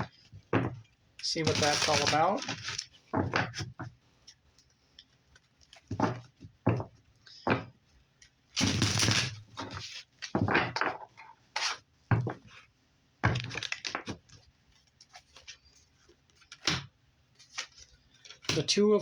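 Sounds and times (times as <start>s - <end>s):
cards shuffling: 1.4s - 2.9s.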